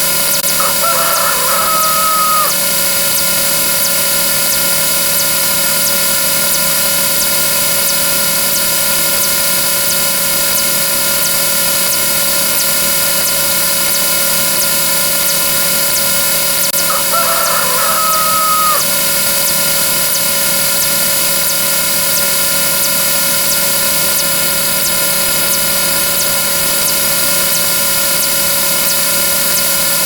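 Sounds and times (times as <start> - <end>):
faint regular ticking: 3.1 - 16.8, 19.4 - 29.8.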